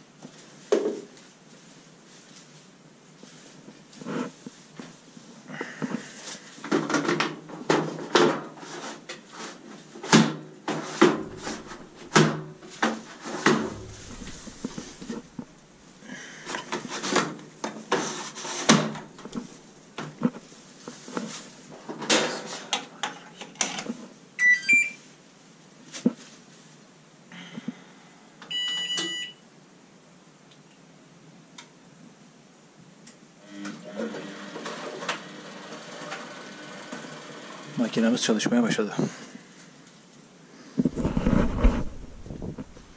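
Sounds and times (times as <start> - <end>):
parts and panels clattering: 10.7 - 20.2
washing machine electronic beeps: 24.4 - 25.0, 28.5 - 29.4.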